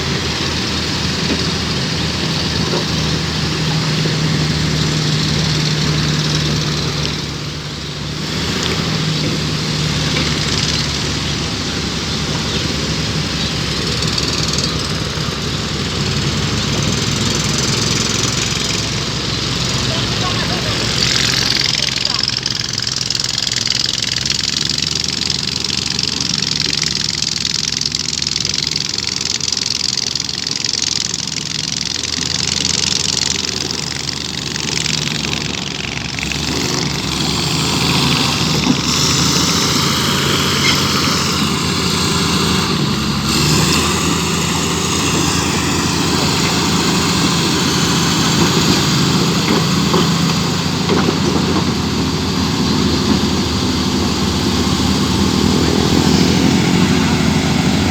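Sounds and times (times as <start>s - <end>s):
large diesel engine running: 0.0s - 57.9s.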